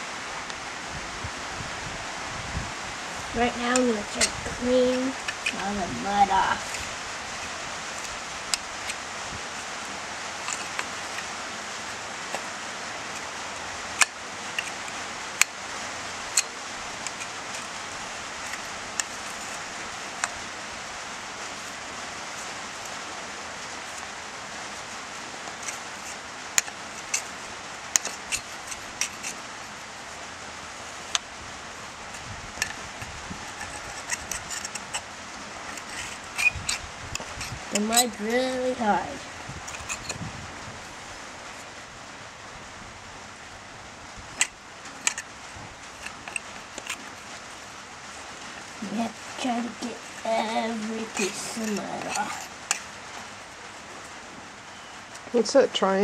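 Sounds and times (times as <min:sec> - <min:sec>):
rain on a roof: 0:00.0 - 0:56.0
hoof pick clicks and scrapes: 0:03.6 - 0:09.7, 0:10.4 - 0:15.6, 0:16.2 - 0:20.4, 0:23.7 - 0:29.8, 0:30.8 - 0:31.3, 0:31.9 - 0:39.0, 0:39.6 - 0:40.2, 0:44.3 - 0:54.1.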